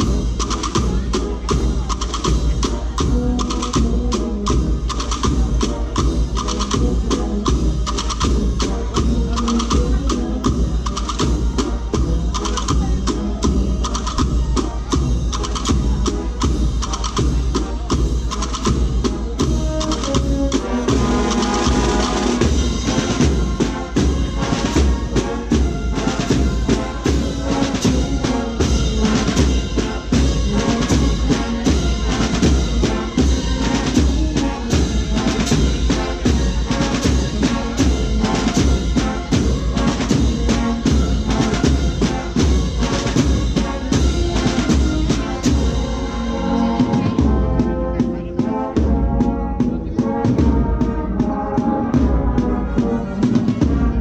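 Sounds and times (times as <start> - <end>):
marching band playing: 0.0 - 54.0
snare and bass drums beating: 0.0 - 54.0.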